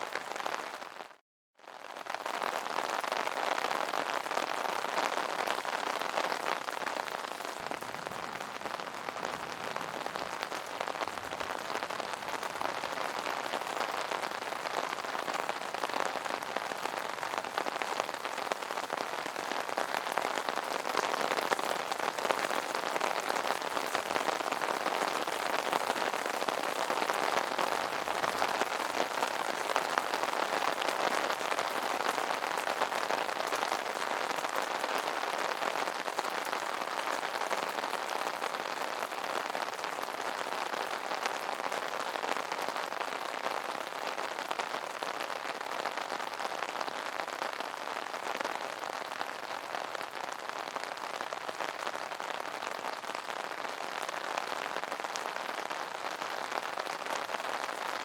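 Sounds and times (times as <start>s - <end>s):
rain on an umbrella: 0.0s - 58.0s.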